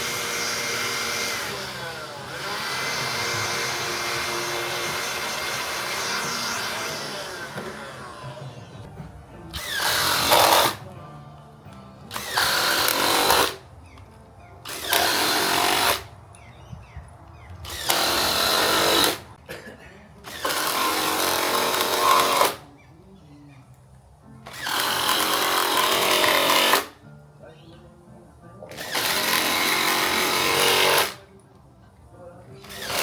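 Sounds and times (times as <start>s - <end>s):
power drill driving screws: 0.0s - 8.8s, 9.5s - 10.8s, 12.1s - 13.6s, 14.6s - 16.1s, 17.6s - 19.3s, 20.3s - 22.6s, 24.5s - 27.0s, 28.7s - 31.2s, 32.6s - 33.0s.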